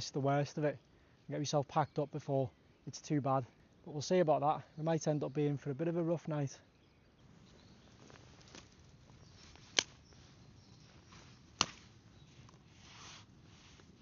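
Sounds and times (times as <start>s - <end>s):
faint steady hiss: 0.0s - 14.0s
campfire popping and cracking: 7.3s - 12.7s.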